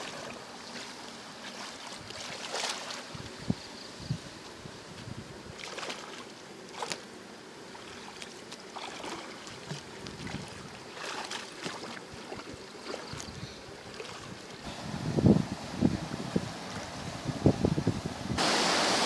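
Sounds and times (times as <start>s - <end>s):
water splashing and sloshing: 0.0s - 3.4s, 4.9s - 19.0s
wind hissing: 14.6s - 19.0s.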